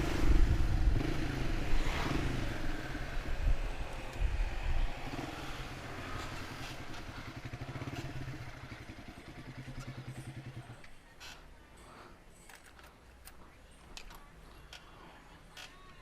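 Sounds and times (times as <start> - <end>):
wind rumble on microphone: 0.0 - 5.2
motorcycle engine idling: 2.7 - 11.6.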